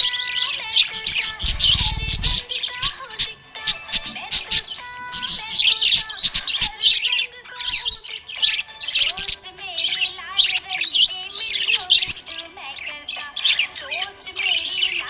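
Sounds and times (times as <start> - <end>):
low whistled bird notes: 0.0 - 9.1
budgerigars chirping: 0.0 - 15.0.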